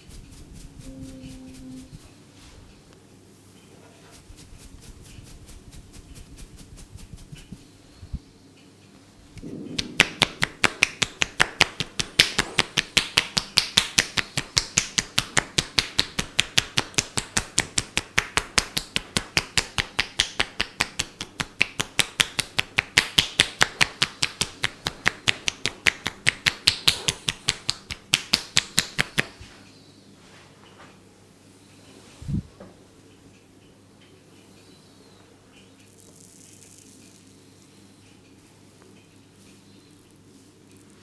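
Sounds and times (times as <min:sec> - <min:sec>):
hands slapping in massage: 0:09.4 - 0:29.5.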